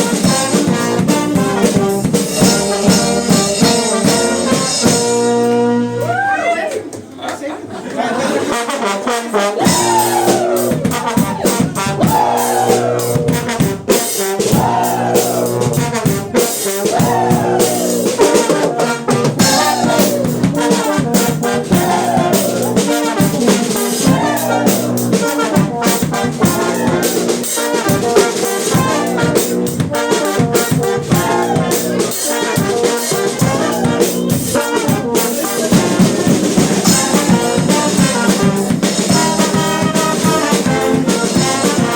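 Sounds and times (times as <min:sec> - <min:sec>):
brass band playing: 0:00.0 - 0:06.1, 0:08.2 - 0:41.9.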